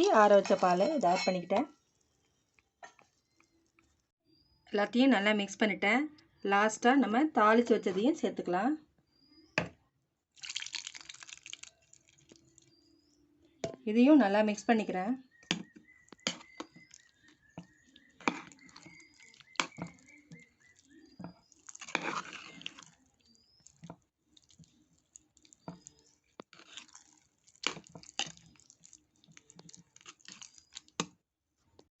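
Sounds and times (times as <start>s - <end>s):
wet squelching of stirred rice: 10.4s - 13.1s, 15.3s - 31.9s.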